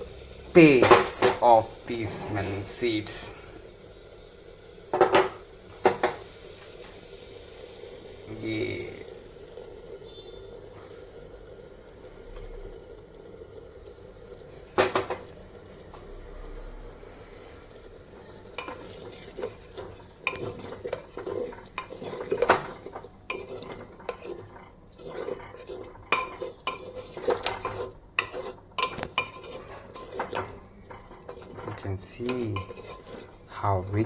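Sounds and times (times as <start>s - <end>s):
spoon scraping cookware: 0.5s - 3.5s, 4.9s - 6.4s, 14.8s - 15.3s, 18.2s - 34.0s.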